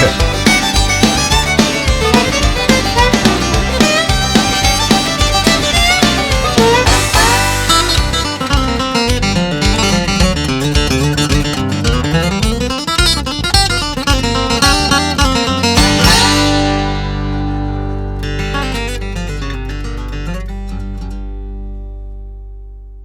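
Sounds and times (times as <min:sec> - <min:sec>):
country guitar music: 0:00.0 - 0:23.0.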